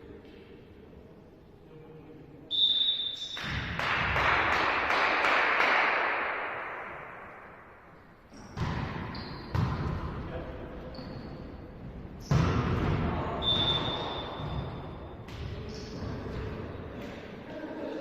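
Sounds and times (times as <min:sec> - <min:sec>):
referee's whistle: 0:02.5 - 0:03.5, 0:13.4 - 0:14.7
crowd clapping and cheering: 0:03.7 - 0:06.5.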